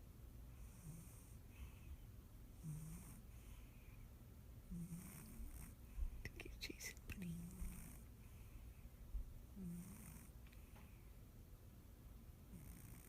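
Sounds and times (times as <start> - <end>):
faint snoring: 0.6 - 2.0, 2.6 - 4.0, 4.7 - 5.8, 7.2 - 8.7, 9.6 - 10.8, 12.5 - 13.0.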